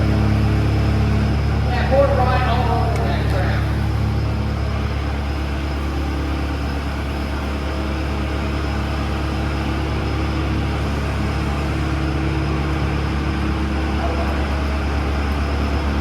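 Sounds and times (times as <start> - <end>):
machine humming: 0.0 - 16.0.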